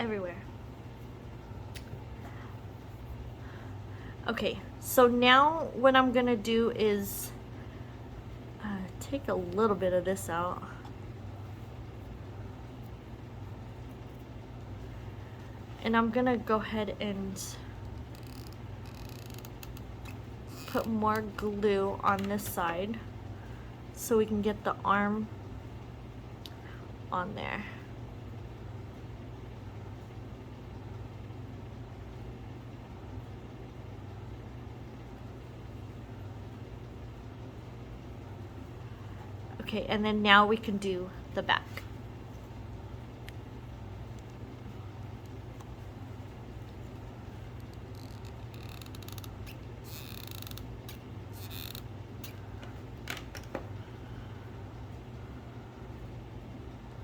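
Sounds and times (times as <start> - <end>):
low machine hum: 0.0 - 57.0
glue gun creaking and clicking: 47.7 - 52.4.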